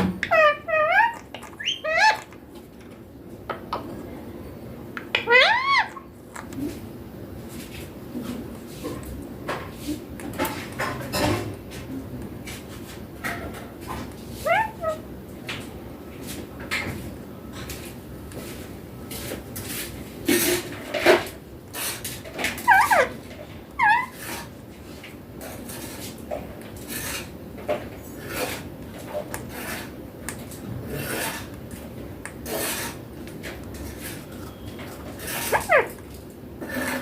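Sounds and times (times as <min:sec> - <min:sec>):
parrot squawks: 0:00.2 - 0:02.4, 0:05.2 - 0:06.1, 0:14.4 - 0:15.0, 0:22.6 - 0:23.2, 0:23.8 - 0:24.2, 0:35.3 - 0:36.0.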